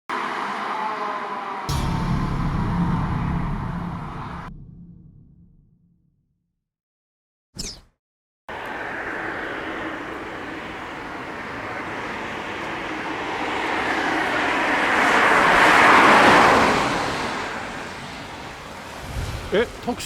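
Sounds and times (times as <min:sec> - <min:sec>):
car driving past: 0:08.5 - 0:19.1.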